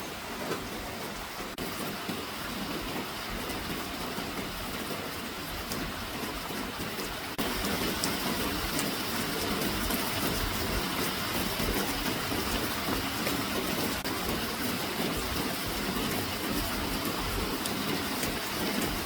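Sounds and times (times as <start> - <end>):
rushing water: 0.0 - 19.0.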